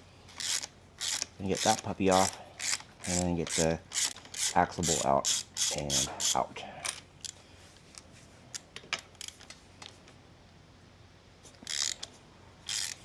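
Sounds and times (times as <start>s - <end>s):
socket wrench ratcheting: 0.4s - 7.4s, 11.6s - 13.0s.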